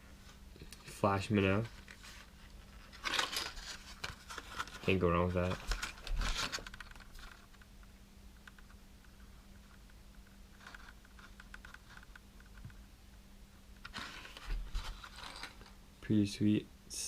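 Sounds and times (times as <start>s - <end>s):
faint steady hum: 0.0s - 17.0s
plastic packaging crinkling: 1.8s - 7.6s, 13.9s - 15.8s.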